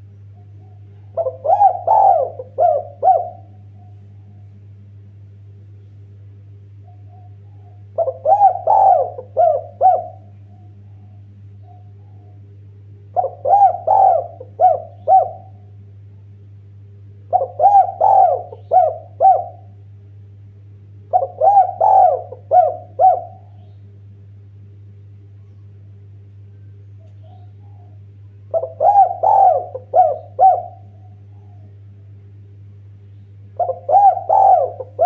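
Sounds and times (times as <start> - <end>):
dove cooing: 0.0 - 4.5, 6.8 - 12.5, 13.1 - 15.8, 17.3 - 19.8, 21.1 - 23.8, 27.0 - 31.8, 33.6 - 35.0
steady low hum: 0.0 - 35.0.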